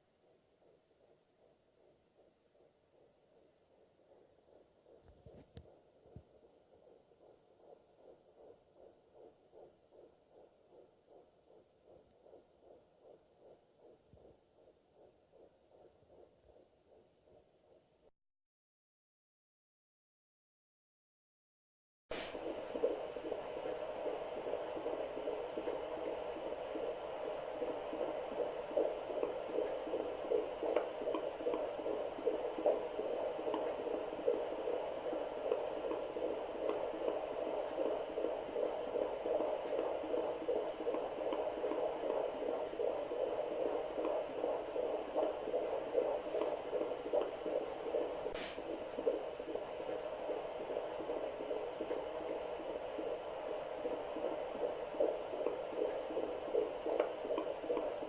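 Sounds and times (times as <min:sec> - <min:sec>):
whooshing heartbeat pulses: 0:00.0 - 0:18.1, 0:22.1 - 0:58.0
hiss: 0:22.1 - 0:22.5, 0:48.3 - 0:48.7.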